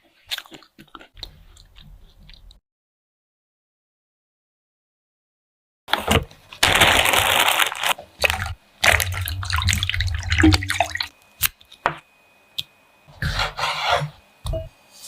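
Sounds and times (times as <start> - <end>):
liquid splashing and running: 6.6 - 11.1.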